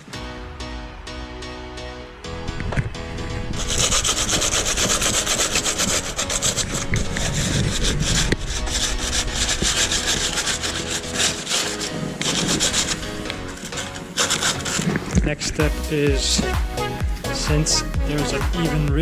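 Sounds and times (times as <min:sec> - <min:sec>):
sandpaper rasping on metal panel: 0:03.6 - 0:15.2.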